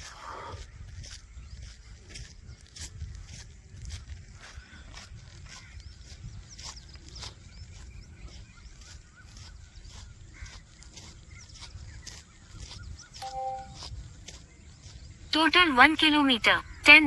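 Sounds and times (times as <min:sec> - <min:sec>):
footsteps walking: 0:00.0 - 0:15.1
bird calls: 0:04.4 - 0:15.3.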